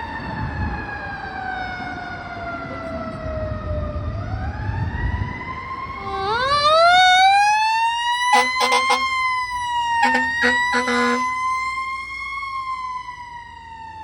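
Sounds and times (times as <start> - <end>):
engine and road noise: 0.0 - 14.0
second siren wail: 0.0 - 14.0
mechanical siren wailing: 4.1 - 14.0.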